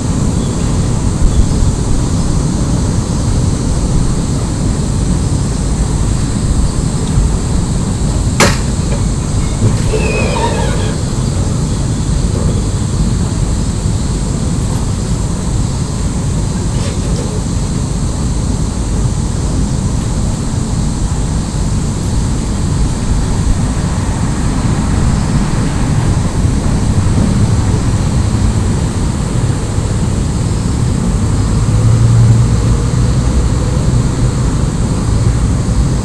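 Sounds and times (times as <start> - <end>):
window squeaky scraping: 8.1 - 13.0.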